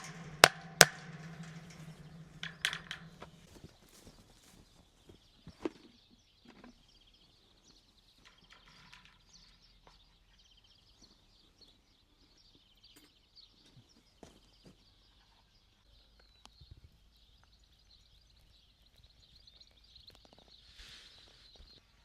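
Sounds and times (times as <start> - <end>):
sharp knock: 0.0 - 3.5.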